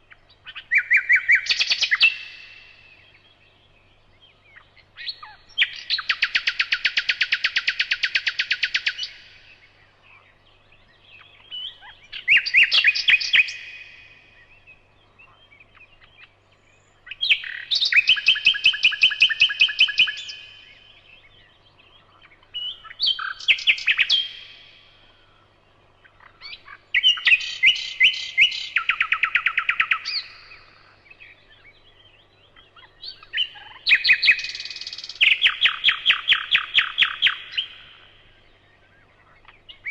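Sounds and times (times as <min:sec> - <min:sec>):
songbird trilling: 0:00.0 - 0:39.9.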